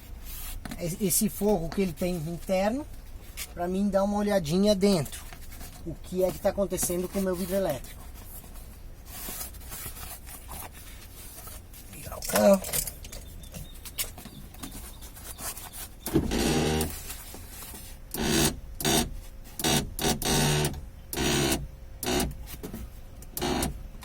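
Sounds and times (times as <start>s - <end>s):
power window motor: 16.0s - 17.0s, 18.1s - 22.4s, 23.4s - 23.8s.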